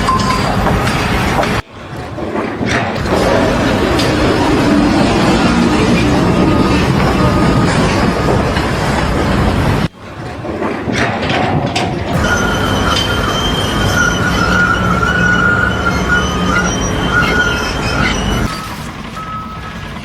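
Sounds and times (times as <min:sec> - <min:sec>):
loud machine noise: 0:00.0 - 0:20.0
high whine: 0:02.8 - 0:10.0, 0:12.1 - 0:20.0.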